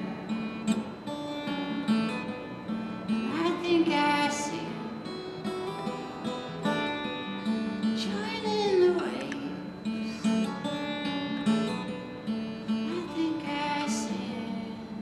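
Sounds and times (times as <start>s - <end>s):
acoustic guitar strumming: 0.0s - 15.0s
person singing: 3.2s - 4.9s, 7.9s - 10.6s, 12.7s - 15.0s.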